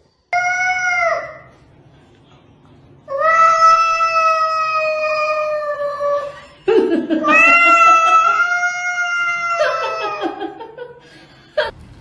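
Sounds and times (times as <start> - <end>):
cat yowling: 7.2 - 10.4.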